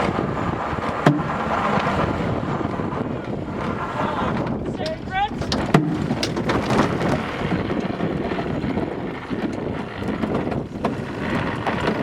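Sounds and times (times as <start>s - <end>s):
water rushing past yacht: 0.0s - 12.0s
wind buffeting microphone: 0.0s - 12.0s
sharp knocks: 1.0s - 2.0s, 5.4s - 6.9s.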